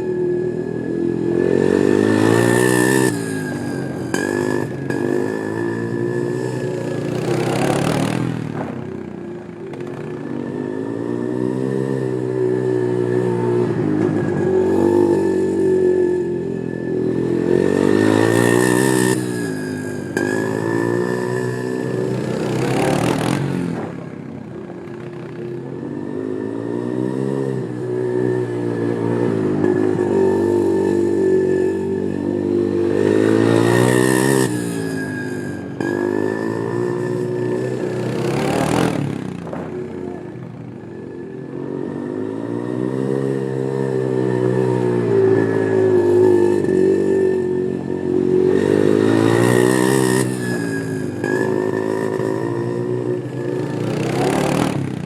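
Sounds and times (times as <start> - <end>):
atv engines revving: 0.0 - 55.0.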